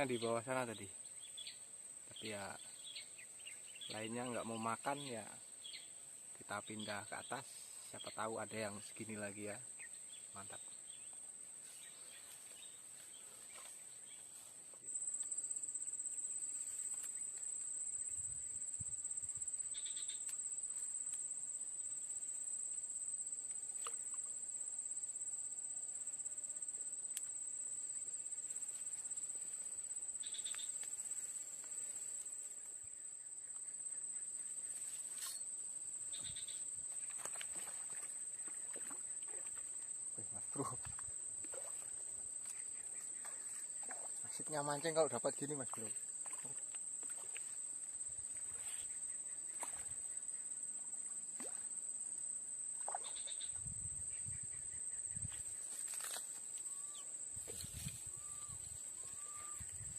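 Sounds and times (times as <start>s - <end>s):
insects buzzing drone: 0.0s - 59.9s.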